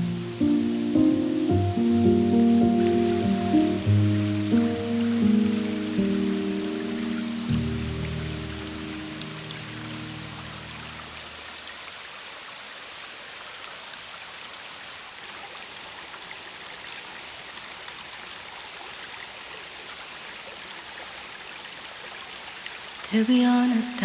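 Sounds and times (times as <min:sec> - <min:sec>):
faint pulsing high hiss: 0:00.0 - 0:11.9
steady rain-like hiss: 0:00.0 - 0:24.0.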